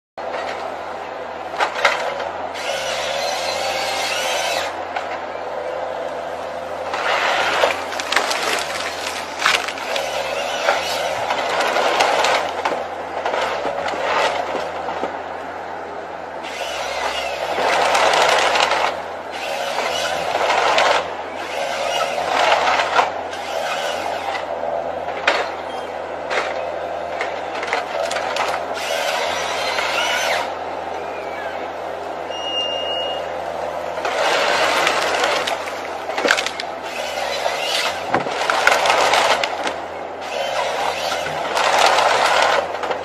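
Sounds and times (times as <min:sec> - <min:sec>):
engine hum: 0:00.2 - 0:43.0
machine cutting wood: 0:01.6 - 0:04.8, 0:06.9 - 0:14.7, 0:16.4 - 0:24.5, 0:27.5 - 0:30.5, 0:34.0 - 0:43.0
wood cracking: 0:06.9 - 0:15.2, 0:27.2 - 0:30.4, 0:34.0 - 0:43.0.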